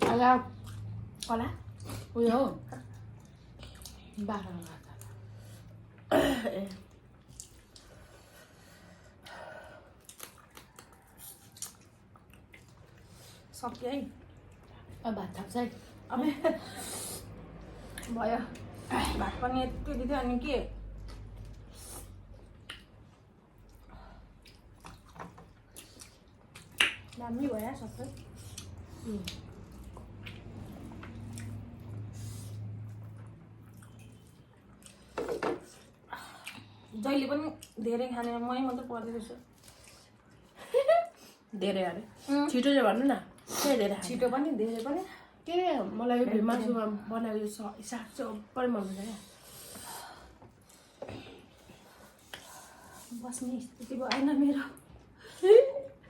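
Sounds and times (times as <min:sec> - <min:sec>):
wet chewing mouth sounds: 0:00.5 - 0:06.1, 0:06.9 - 0:08.2, 0:09.9 - 0:15.0, 0:20.8 - 0:40.6.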